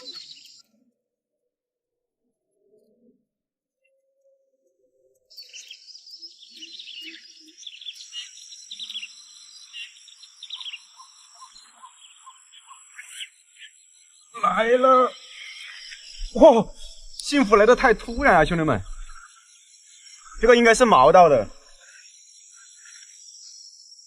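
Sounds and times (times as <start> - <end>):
bird chirps: 0.0 - 0.9, 3.8 - 24.0
high-pitched insect drone: 12.6 - 24.0.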